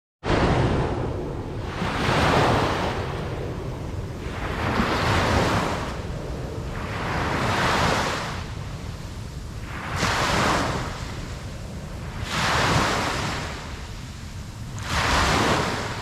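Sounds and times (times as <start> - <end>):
low rumble: 0.2 - 9.7
ocean waves breaking: 0.2 - 16.0.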